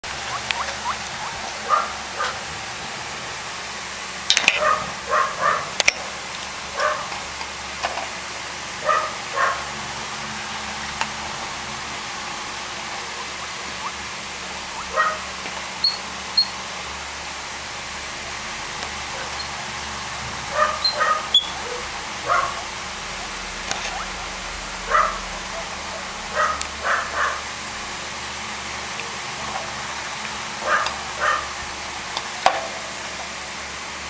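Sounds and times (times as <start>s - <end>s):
puppy yipping and whimpering: 0.1s - 2.4s, 13.1s - 16.5s, 20.5s - 27.4s.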